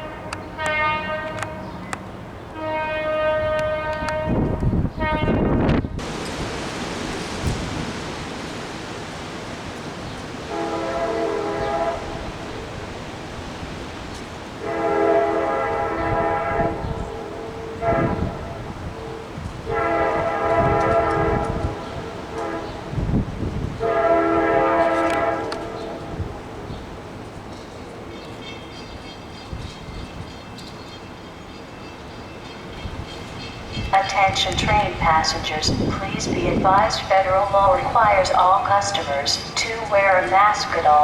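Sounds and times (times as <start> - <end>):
locomotive air horn blasts: 0.0 - 1.9, 2.6 - 5.6, 10.4 - 12.5, 14.6 - 26.4
wind buffeting microphone: 2.9 - 30.4, 32.6 - 41.0.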